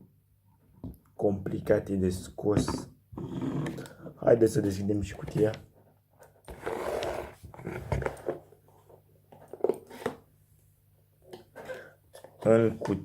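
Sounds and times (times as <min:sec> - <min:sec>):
cardboard lid scraping off: 0:06.5 - 0:08.4.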